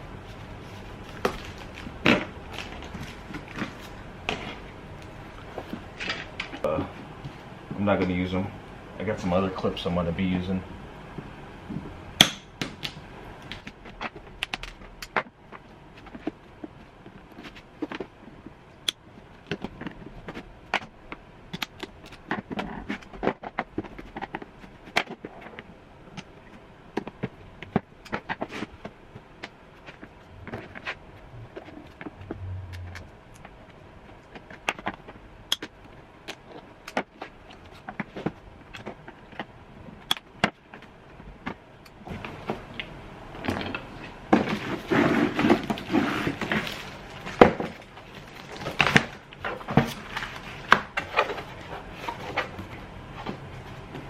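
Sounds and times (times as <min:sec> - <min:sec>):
scraping and rustling: 0:00.0 - 0:07.5, 0:36.4 - 0:54.0.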